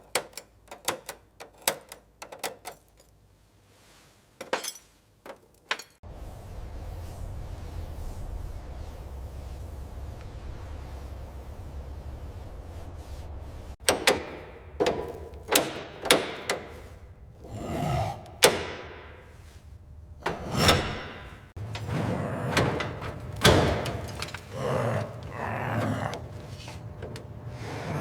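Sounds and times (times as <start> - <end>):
scraping: 13.8 - 28.0
sharp knocks and clunks: 13.8 - 28.0.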